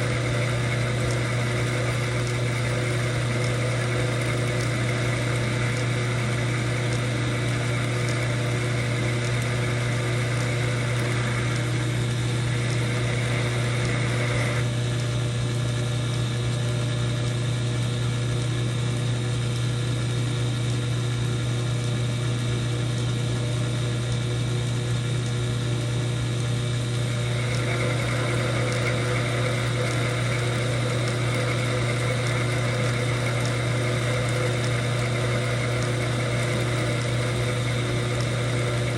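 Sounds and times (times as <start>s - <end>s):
metal lathe humming: 0.0s - 15.0s, 26.9s - 38.9s.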